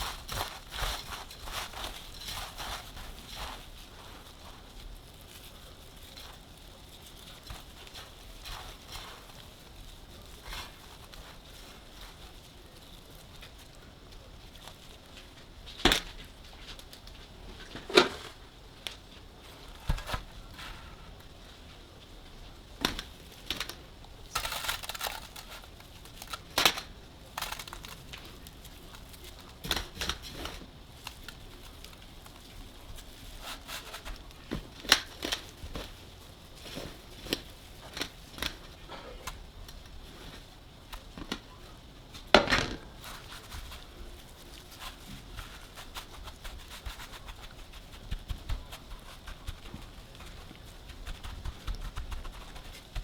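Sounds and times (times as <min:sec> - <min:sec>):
dry pastry rustling and tearing: 0:00.0 - 0:53.0.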